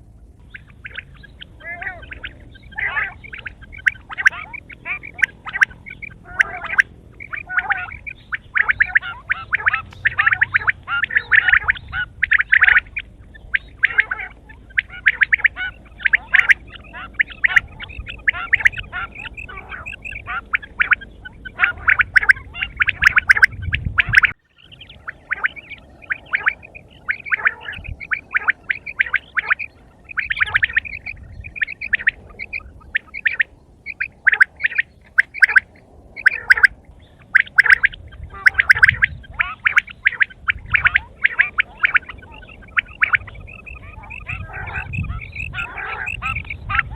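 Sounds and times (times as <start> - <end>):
quail chattering calls: 0.4 - 46.9.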